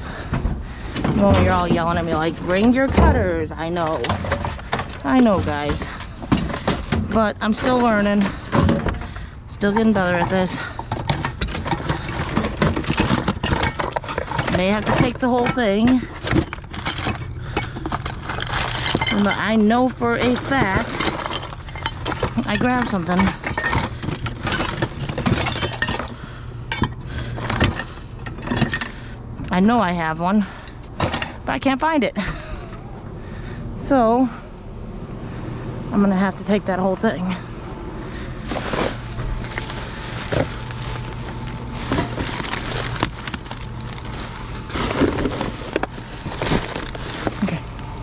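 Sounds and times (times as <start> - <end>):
steady low hum: 0.0 - 48.0
scrap metal clinking and clattering: 1.0 - 29.1, 38.5 - 47.6.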